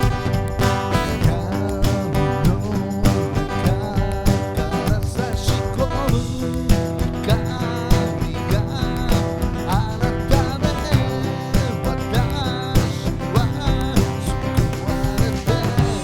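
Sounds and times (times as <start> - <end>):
country music with plucked guitar: 0.0 - 16.0.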